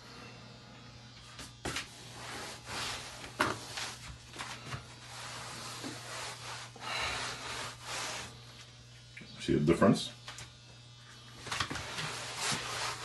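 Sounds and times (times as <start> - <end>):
scrubbing on a wall: 1.4 - 8.7, 11.4 - 13.0.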